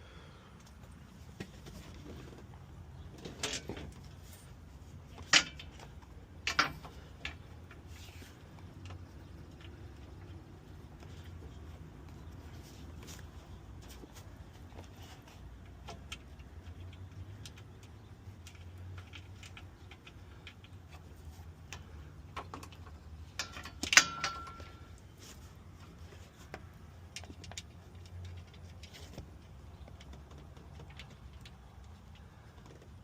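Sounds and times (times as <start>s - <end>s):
hand tools clicking and clinking: 21.5s - 25.0s.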